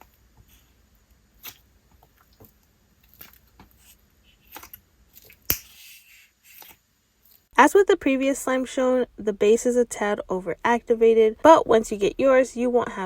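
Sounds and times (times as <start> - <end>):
slime squishing: 1.3 - 5.8.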